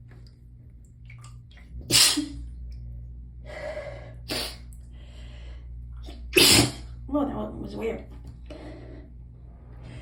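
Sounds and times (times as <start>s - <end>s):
person sneezing: 6.4s - 6.9s.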